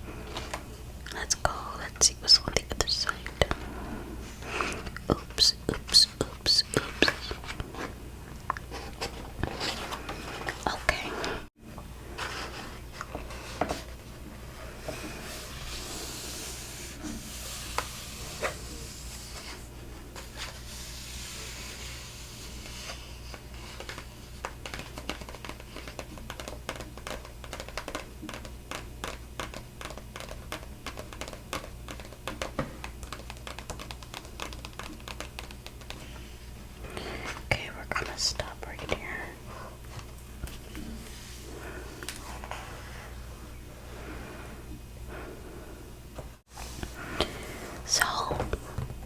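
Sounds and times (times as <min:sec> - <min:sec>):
paper pages rustling: 0:04.8 - 0:11.4
light clicks and scratches: 0:20.2 - 0:36.4.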